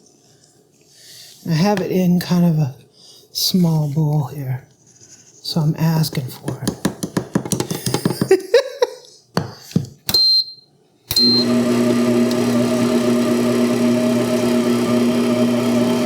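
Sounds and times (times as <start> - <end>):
stand mixer motor humming: 11.1 - 16.0.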